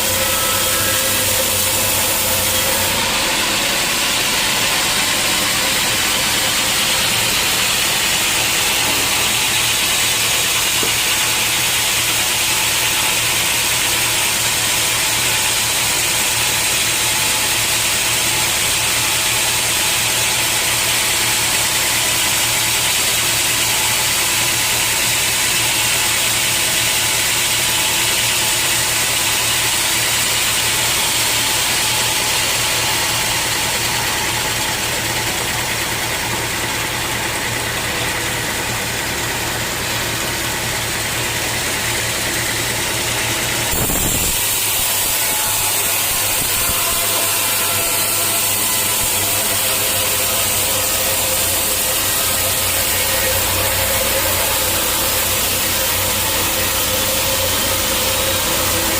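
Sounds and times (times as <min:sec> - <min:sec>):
sawmill machinery running: 0:00.0 - 0:58.9.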